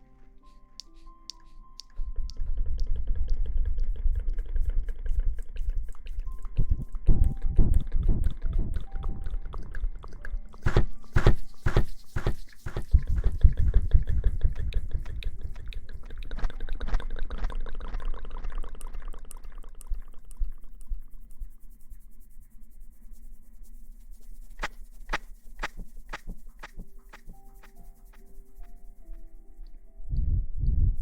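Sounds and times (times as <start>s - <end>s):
lather squishing in hair: 10.7s - 14.2s.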